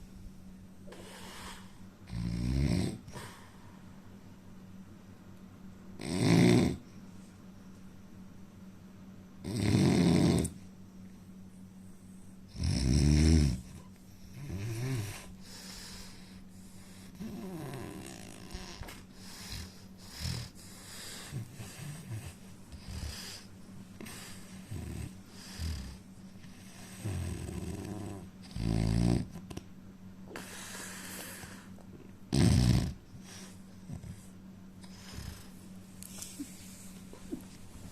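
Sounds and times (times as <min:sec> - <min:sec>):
faint steady hum: 0:00.0 - 0:37.9
man snoring: 0:01.0 - 0:03.1, 0:06.0 - 0:06.8, 0:09.4 - 0:10.6, 0:12.5 - 0:13.6, 0:14.4 - 0:15.3, 0:17.1 - 0:23.5, 0:26.9 - 0:29.3, 0:32.3 - 0:33.0.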